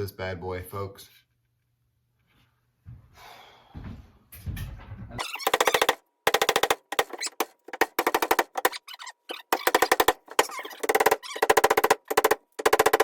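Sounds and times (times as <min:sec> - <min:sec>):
hammer knocking wooden wedge: 0:05.2 - 0:13.0.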